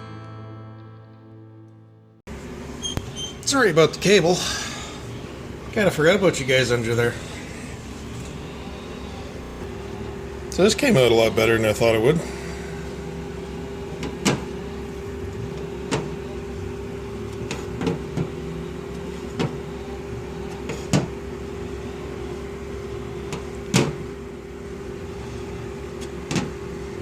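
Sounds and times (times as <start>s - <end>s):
machine hum: 7.1s - 11.6s.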